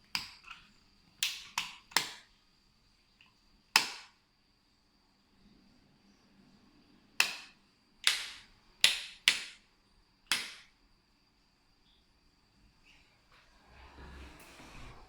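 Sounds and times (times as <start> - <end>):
wall switch clicks: 7.2 - 9.6.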